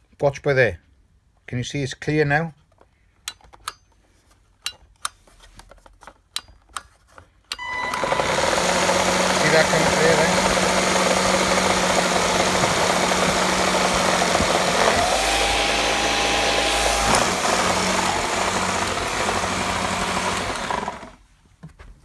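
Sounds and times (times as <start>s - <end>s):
thin whine: 7.6s - 21.0s
upright vacuum cleaner running: 7.6s - 21.2s
person talking: 9.2s - 13.7s.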